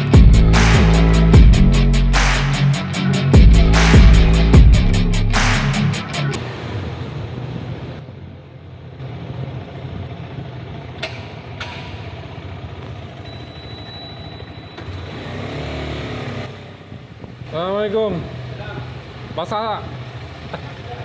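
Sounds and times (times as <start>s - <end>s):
motorcycle engine running: 0.0s - 6.4s.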